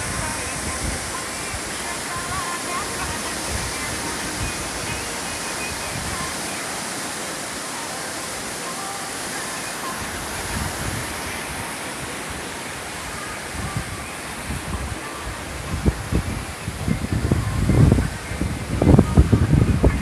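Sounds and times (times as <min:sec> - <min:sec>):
lake waves washing: 0:00.0 - 0:20.0
wind buffeting microphone: 0:00.0 - 0:20.0.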